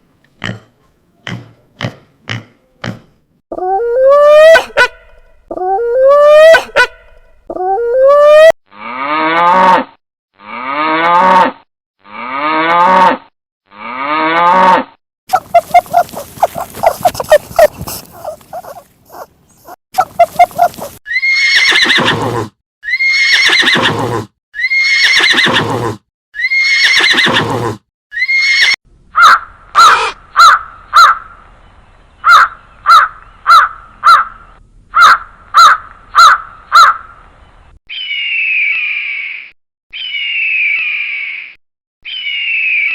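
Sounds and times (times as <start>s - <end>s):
animal calls: 15.3s - 22.1s.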